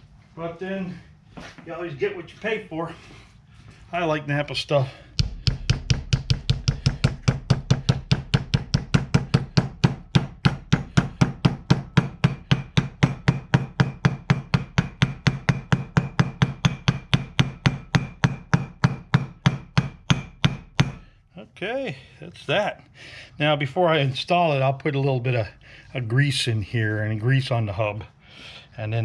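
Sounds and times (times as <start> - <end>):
hammer tapping metal: 5.2 - 21.1.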